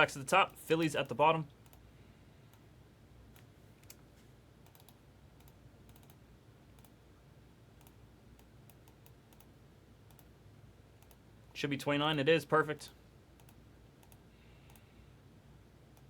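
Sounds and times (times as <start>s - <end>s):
low steady hum: 0.0s - 16.0s
computer mouse clicks: 1.6s - 1.8s, 3.3s - 4.0s, 4.6s - 6.2s, 6.8s - 7.0s, 7.8s - 9.5s, 10.1s - 10.3s, 11.0s - 11.2s, 13.4s - 14.8s.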